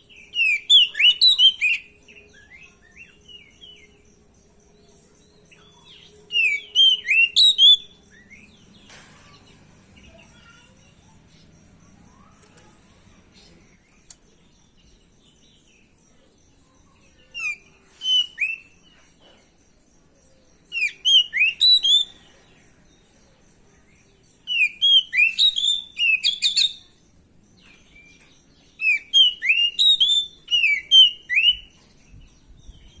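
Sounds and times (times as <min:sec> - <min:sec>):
songbird whistling song: 0:00.0 - 0:10.8, 0:16.6 - 0:18.9, 0:20.6 - 0:22.4, 0:24.4 - 0:27.0, 0:27.6 - 0:33.0.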